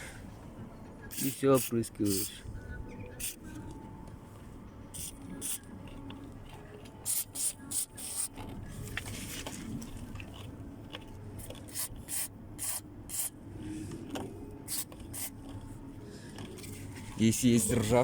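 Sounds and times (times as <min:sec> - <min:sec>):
aerosol can spraying: 0:01.1 - 0:02.3, 0:05.0 - 0:05.6, 0:07.0 - 0:08.3, 0:11.4 - 0:13.3, 0:14.7 - 0:15.3.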